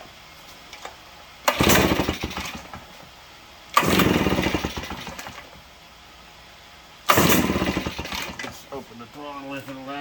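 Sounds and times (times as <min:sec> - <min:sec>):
engine firing and sputtering: 0:01.4 - 0:02.9, 0:03.7 - 0:05.6, 0:07.0 - 0:08.6.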